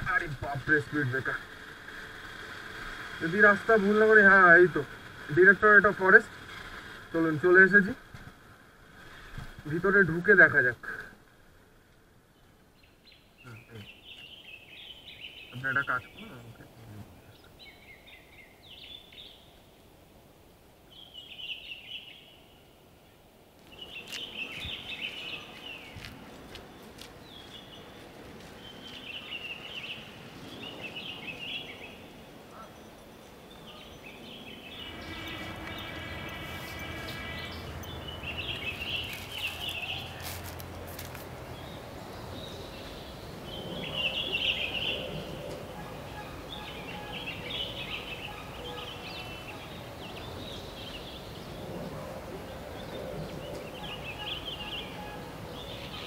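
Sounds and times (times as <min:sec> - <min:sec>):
steady low hum: 0:00.0 - 0:18.7, 0:22.6 - 0:56.0
birds chirping: 0:00.0 - 0:56.0
faint background hiss: 0:00.0 - 0:56.0
held pitched call: 0:34.6 - 0:40.4, 0:43.7 - 0:50.2, 0:53.7 - 0:56.0.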